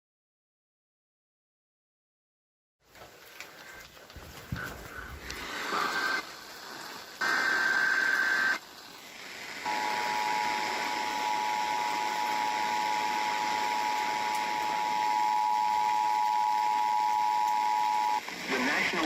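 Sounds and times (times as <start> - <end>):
radio hiss: 4.5 - 19.0
two-tone attention signal: 9.7 - 18.2.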